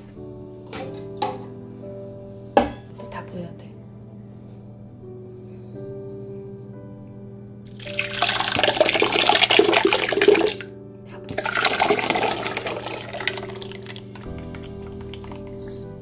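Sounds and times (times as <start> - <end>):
soft background music: 0.0 - 16.0
water pouring and splashing: 7.7 - 10.6, 11.3 - 15.8.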